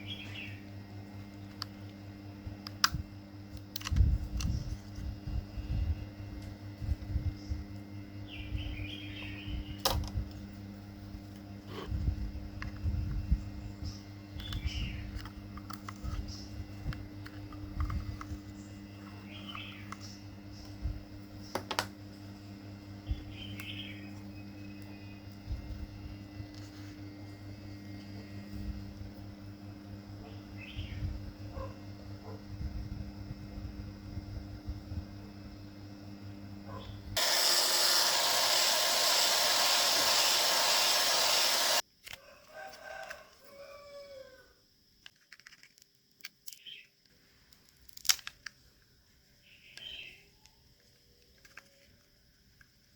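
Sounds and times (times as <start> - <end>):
steady low hum: 0.0 - 37.3
loud even hiss: 37.2 - 41.8.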